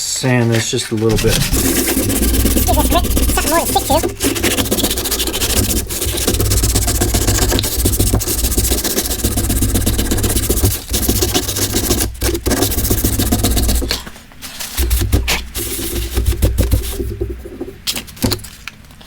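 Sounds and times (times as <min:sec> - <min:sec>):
sanding metal: 0:01.1 - 0:13.9.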